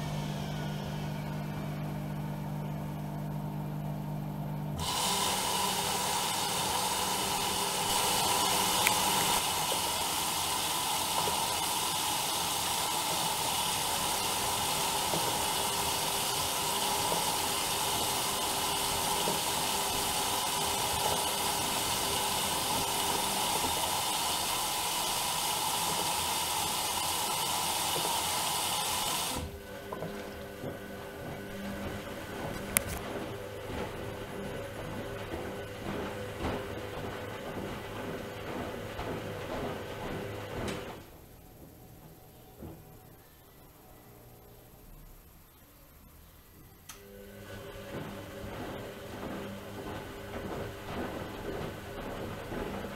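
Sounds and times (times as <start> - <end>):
washing machine motor hum: 0.0 - 52.9
water hissing into machine: 4.8 - 30.0.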